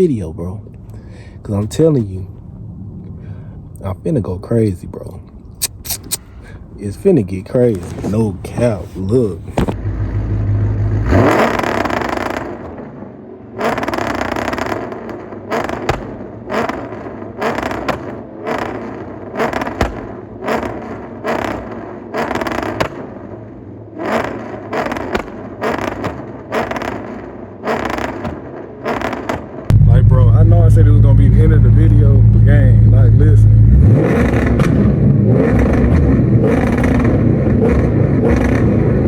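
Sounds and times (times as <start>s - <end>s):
car engine revving: 7.6s - 39.0s
exhaust popping on limiter: 27.8s - 39.0s.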